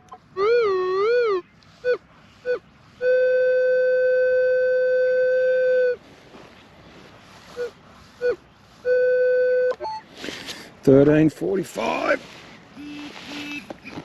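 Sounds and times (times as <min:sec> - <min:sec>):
metal detector steady tone: 0:00.0 - 0:06.0, 0:07.4 - 0:10.1, 0:12.8 - 0:13.6.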